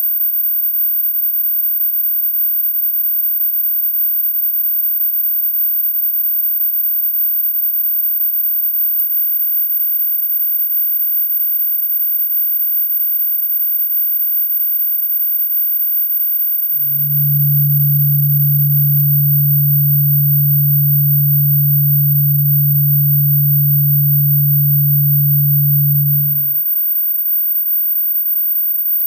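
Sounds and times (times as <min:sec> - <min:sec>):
low hum: 0:16.8 - 0:26.6
very high-pitched whine: 0:16.8 - 0:26.6.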